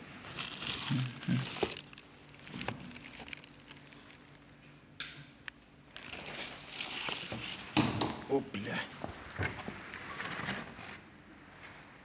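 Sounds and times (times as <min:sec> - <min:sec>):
rustling: 0:00.2 - 0:04.5, 0:05.9 - 0:07.8.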